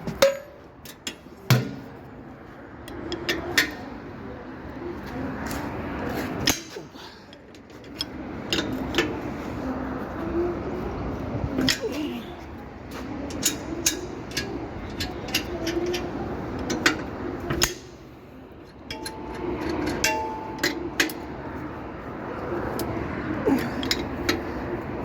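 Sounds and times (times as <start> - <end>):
metal tools clinking: 18.9 - 21.3.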